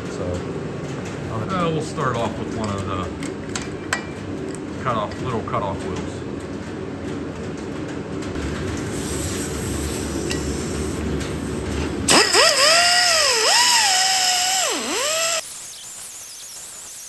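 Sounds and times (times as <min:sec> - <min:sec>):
cutoff wheel whining through metal: 0:11.6 - 0:17.0.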